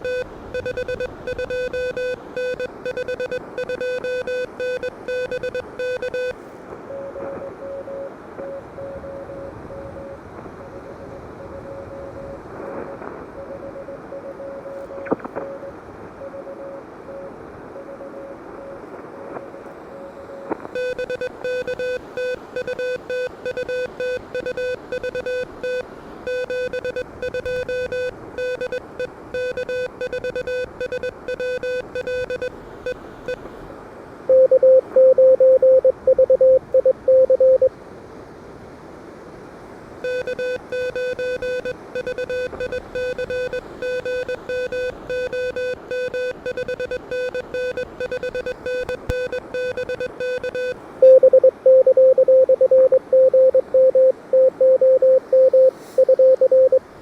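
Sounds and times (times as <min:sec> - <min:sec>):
morse code tones: 0:00.0 - 0:33.4, 0:34.3 - 0:37.7, 0:40.0 - 0:56.8
receiver hiss: 0:17.9 - 0:33.7, 0:40.0 - 0:57.0.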